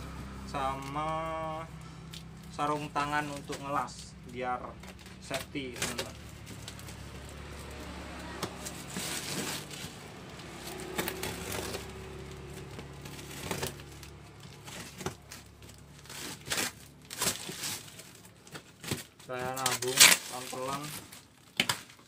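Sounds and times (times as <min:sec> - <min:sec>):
packaging crinkling and rustling: 0:00.2 - 0:22.0.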